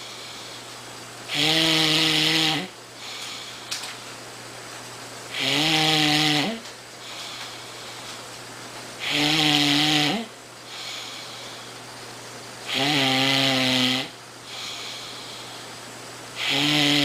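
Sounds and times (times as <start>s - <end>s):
quiet breathing: 0.0s - 0.9s, 2.9s - 3.8s, 7.0s - 8.3s, 10.6s - 12.0s, 14.4s - 16.6s
man snoring: 1.3s - 2.8s, 5.3s - 6.6s, 9.0s - 11.4s, 12.7s - 15.5s, 16.4s - 17.0s.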